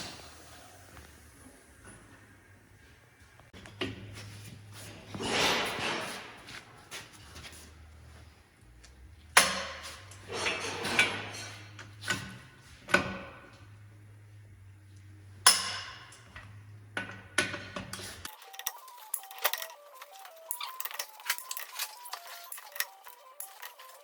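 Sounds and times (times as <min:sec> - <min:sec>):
metal clanks and knocks: 0:03.5 - 0:07.2, 0:09.3 - 0:13.7, 0:15.4 - 0:24.0
low steady hum: 0:06.7 - 0:18.3
music: 0:18.3 - 0:24.0.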